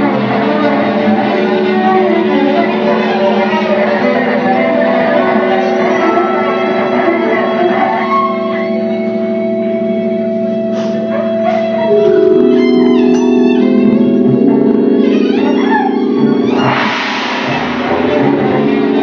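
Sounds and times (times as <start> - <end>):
low held notes cluster: 0.0 - 19.0
string trio droning: 0.0 - 19.0
short sliding high notes: 11.9 - 19.0.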